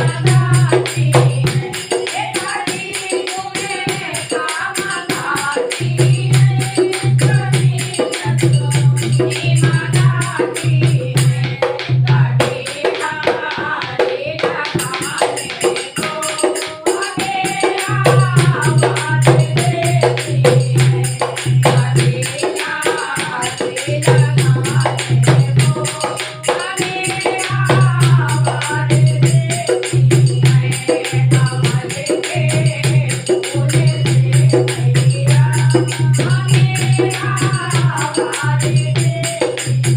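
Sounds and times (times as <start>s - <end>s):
devotional singing: 0.0s - 39.9s.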